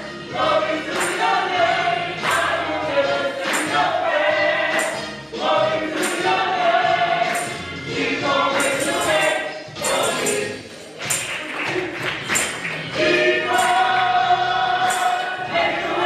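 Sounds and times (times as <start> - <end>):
choir singing held notes: 0.0 - 11.0, 12.4 - 16.0
musical accompaniment: 0.0 - 16.0
sharp percussive hits: 0.9 - 1.6, 2.2 - 2.7, 3.4 - 11.5, 12.3 - 14.2, 14.8 - 15.4.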